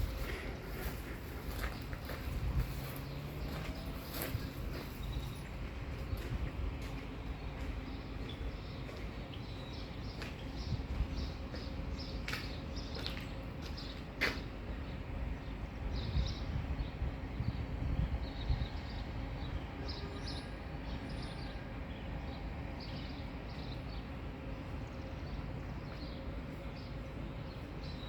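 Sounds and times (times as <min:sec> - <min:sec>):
steady low rumble: 0:00.0 - 0:19.6.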